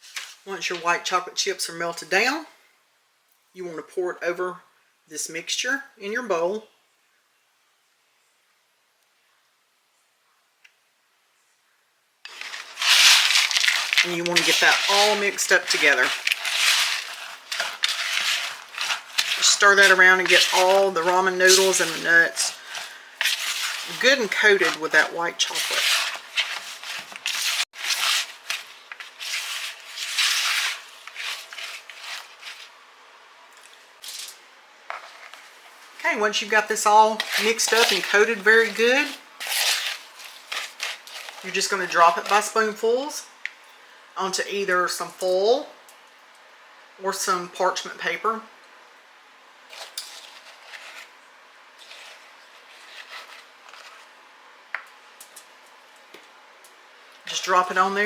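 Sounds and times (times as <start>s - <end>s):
spoon scraping crunchy mixture in bowl: 12.3s - 32.7s, 36.8s - 42.7s, 49.7s - 51.2s, 51.8s - 54.2s.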